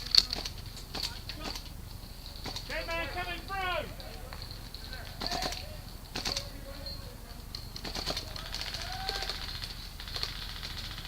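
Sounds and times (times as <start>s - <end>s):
airsoft gun shots: 0.0s - 7.0s, 7.6s - 11.0s
airsoft gun rapid burst: 0.0s - 11.0s.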